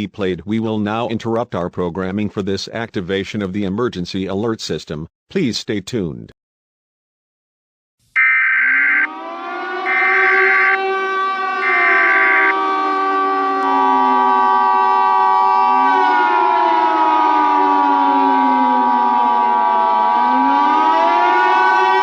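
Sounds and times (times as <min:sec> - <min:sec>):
two-tone attention signal: 0:08.2 - 0:10.8, 0:11.6 - 0:12.5
sirens rising and falling: 0:08.2 - 0:22.0.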